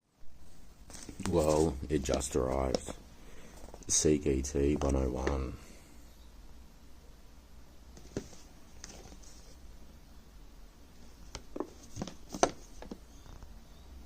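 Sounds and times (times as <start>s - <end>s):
packaging rustling: 0.9s - 3.9s.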